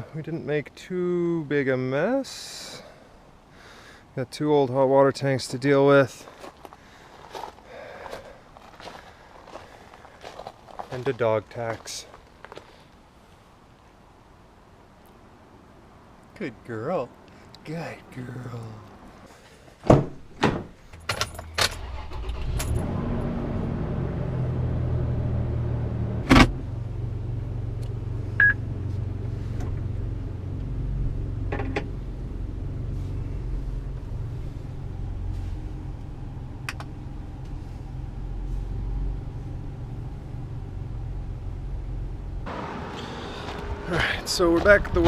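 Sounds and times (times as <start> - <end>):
vehicle engine humming: 21.4 - 45.0
sharp clicks and knocks: 31.5 - 31.9, 36.7 - 36.9.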